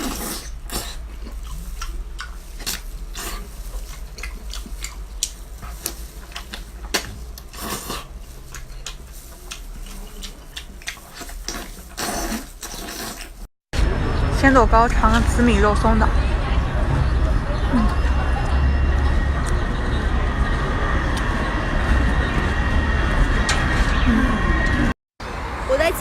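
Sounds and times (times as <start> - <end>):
person chewing: 0.0 - 13.5, 17.8 - 24.8
faint low hum: 13.8 - 24.9.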